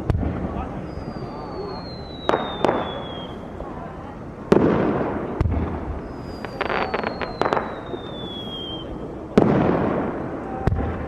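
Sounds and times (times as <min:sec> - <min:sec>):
firework bangs with rumble: 0:00.0 - 0:00.8, 0:01.9 - 0:03.4, 0:04.5 - 0:11.0
crackling firework pops: 0:00.0 - 0:03.5, 0:04.5 - 0:11.0
falling firework whistle: 0:00.7 - 0:03.5, 0:05.9 - 0:09.1.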